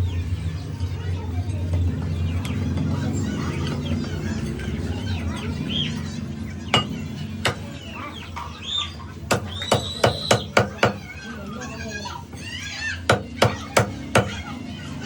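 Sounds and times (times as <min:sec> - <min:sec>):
chickens clucking: 0:00.0 - 0:15.0
sharp knocks: 0:06.7 - 0:07.7.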